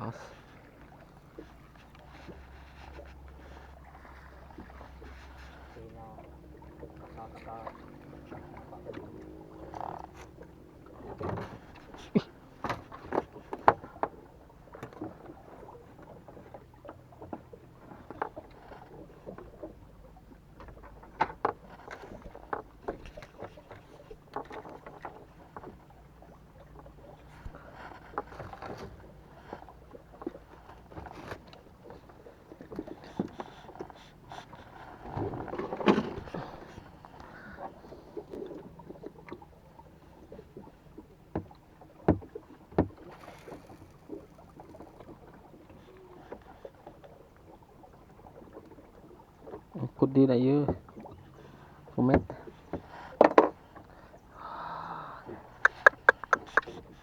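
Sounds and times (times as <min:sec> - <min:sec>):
gear knocking and scraping on boat: 0:00.0 - 0:54.6, 0:55.3 - 0:57.0.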